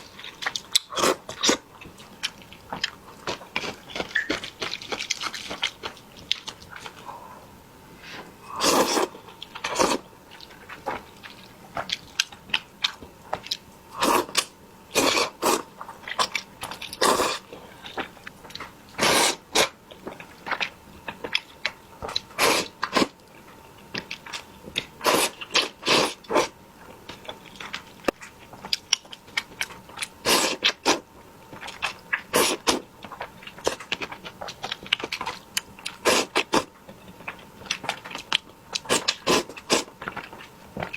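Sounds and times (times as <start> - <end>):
crunching bites and chewing: 0.1 - 7.0.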